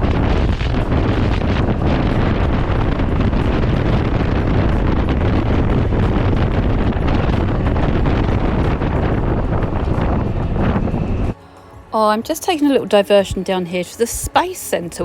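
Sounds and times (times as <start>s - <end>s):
low rumble: 0.0s - 11.9s
wind buffeting microphone: 0.0s - 12.4s.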